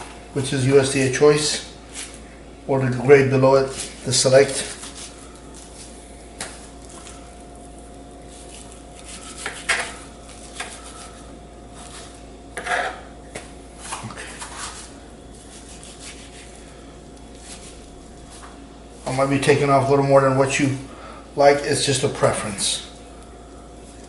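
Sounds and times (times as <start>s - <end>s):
faint steady hum: 0.0s - 24.0s
knife scraping cutting board: 3.6s - 5.9s, 8.4s - 11.2s, 11.8s - 13.1s, 13.8s - 16.6s, 17.3s - 18.5s.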